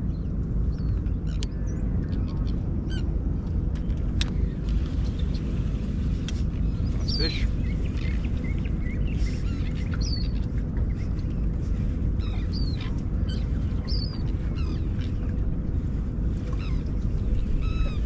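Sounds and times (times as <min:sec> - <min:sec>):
steady low rumble: 0:00.0 - 0:18.0
birds chirping and whistling: 0:06.6 - 0:15.3, 0:16.6 - 0:18.0.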